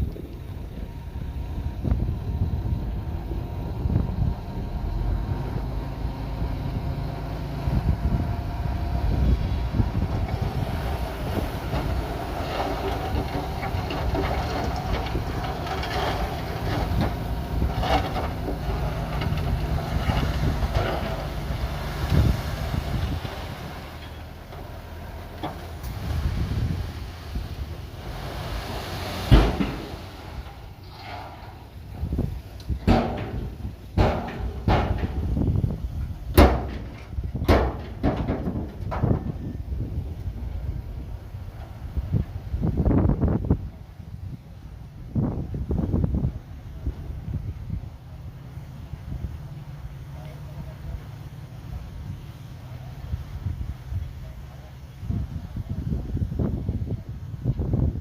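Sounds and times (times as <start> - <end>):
bulldozer diesel engine running: 0.0 - 58.0
steel tracks clanking and squeaking: 10.2 - 21.8, 29.3 - 32.2, 32.8 - 35.6
loud metallic bangs and clanks: 29.2 - 31.7, 32.8 - 35.5, 36.3 - 39.4.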